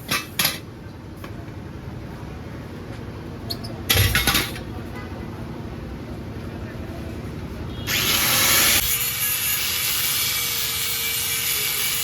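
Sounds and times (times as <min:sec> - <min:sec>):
power tool cutting metal exhaust: 0:07.9 - 0:12.0.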